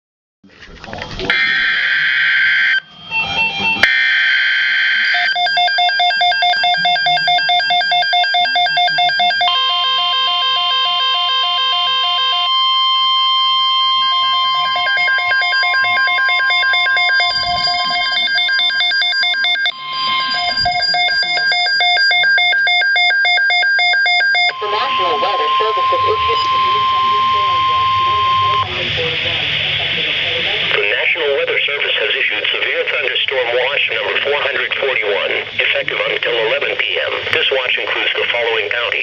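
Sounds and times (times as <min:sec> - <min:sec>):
pulsing electronic alarm beeps: 0:01.3 - 0:29.1
steady attention tone: 0:01.3 - 0:37.3.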